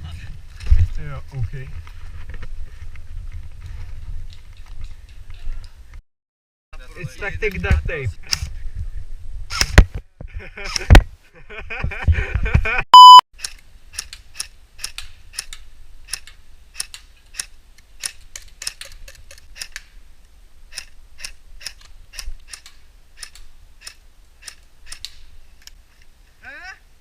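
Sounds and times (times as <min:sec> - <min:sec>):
loud electronic beep: 0:12.9 - 0:13.2.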